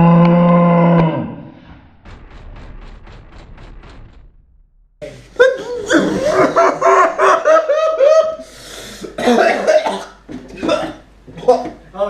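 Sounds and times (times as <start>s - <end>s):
loud laughter: 5.4s - 8.4s
breathy intake: 8.4s - 9.2s.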